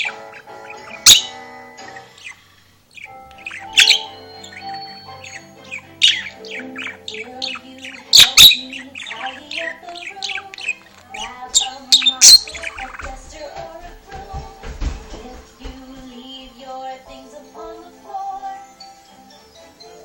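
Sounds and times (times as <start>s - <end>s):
budgerigar chirping and warbling: 0.0s - 13.2s.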